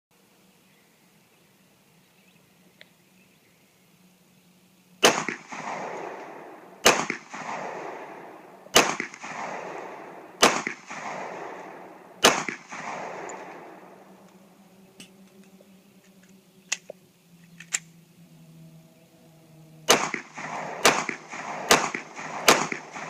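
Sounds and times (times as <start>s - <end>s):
pistol shots with echo: 5.0s - 14.2s, 19.9s - 23.0s.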